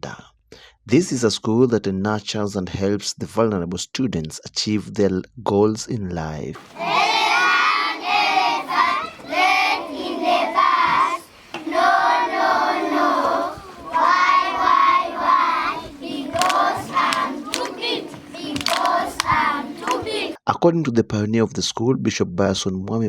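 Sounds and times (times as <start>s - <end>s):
children singing: 6.6s - 20.4s.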